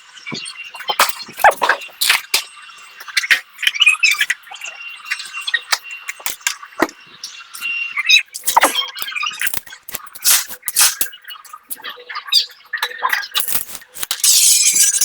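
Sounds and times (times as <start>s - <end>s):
small hard objects clicking: 8.4s - 11.1s, 13.2s - 15.0s.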